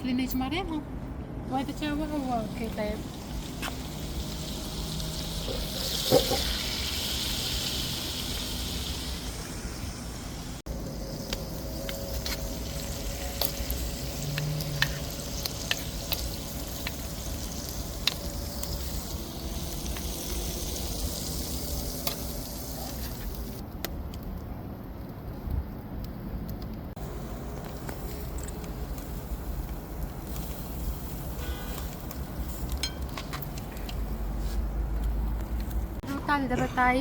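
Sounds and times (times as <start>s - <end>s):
seafood sizzling in hot oil: 2.1s - 23.6s, 27.0s - 33.1s.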